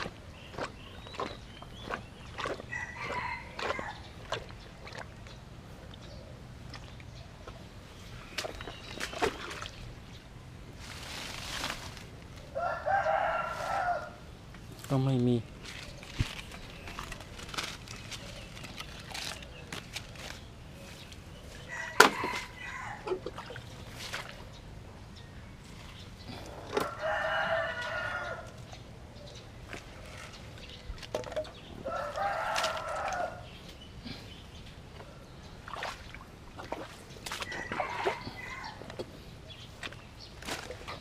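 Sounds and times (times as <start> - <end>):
rooster crowing: 12.6 - 14.2, 26.8 - 28.5, 31.8 - 33.5.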